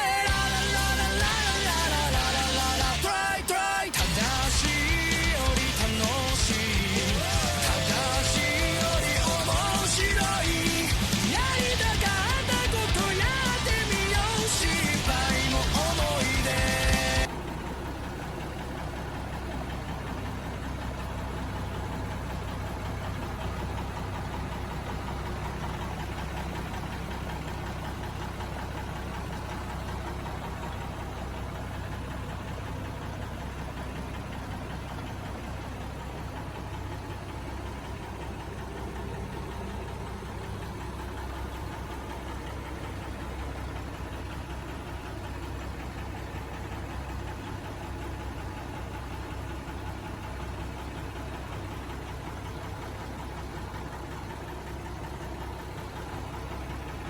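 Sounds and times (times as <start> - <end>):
air conditioner running: 0.0 - 35.3
diesel engine idling: 0.0 - 57.0.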